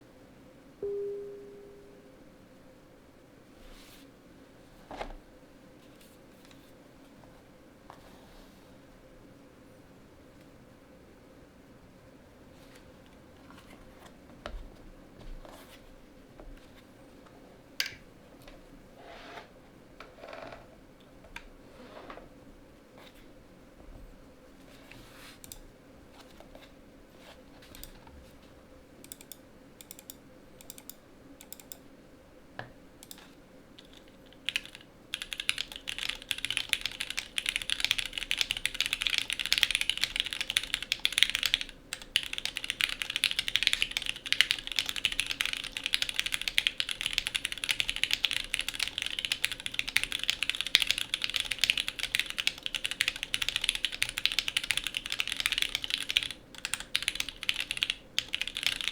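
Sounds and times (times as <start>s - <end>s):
mechanical keyboard typing: 29.0s - 31.8s, 33.8s - 58.9s.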